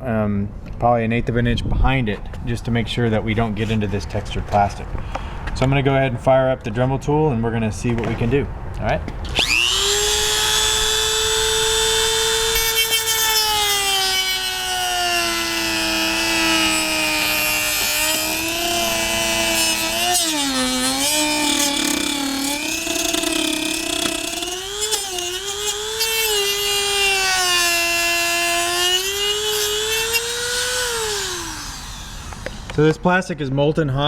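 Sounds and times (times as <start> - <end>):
rotary tool cutting plastic: 9.2 - 32.8.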